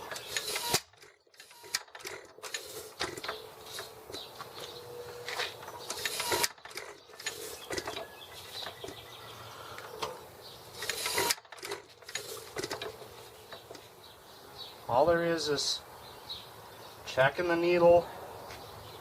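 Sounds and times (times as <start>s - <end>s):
metal clicks scrapes and creaks: 0.0s - 9.0s, 9.7s - 13.9s.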